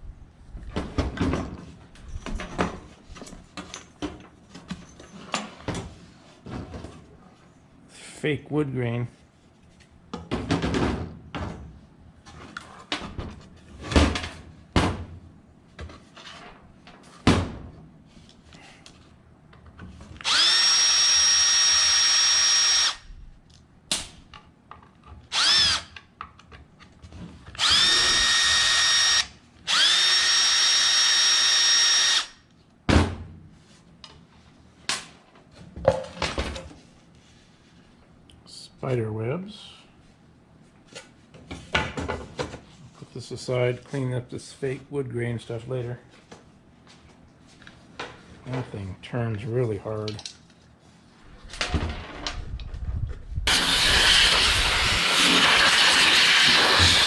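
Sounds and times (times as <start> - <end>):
cordless drill running: 20.2 - 23.0, 25.3 - 25.9, 27.6 - 32.4, 53.5 - 57.0
clicks and knocks of parts handled: 50.0 - 50.6.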